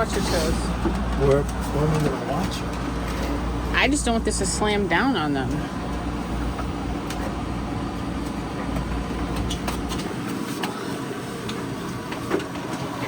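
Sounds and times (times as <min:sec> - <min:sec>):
steady rumbling noise: 0:00.0 - 0:13.0.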